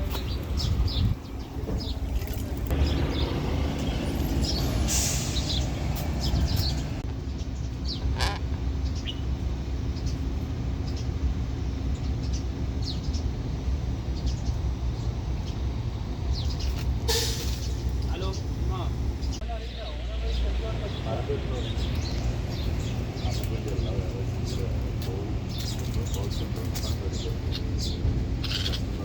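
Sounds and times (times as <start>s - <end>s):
low engine rumble: 0.0s - 29.0s
brief hiss: 17.1s - 17.8s
parrots chirping: 25.6s - 29.0s.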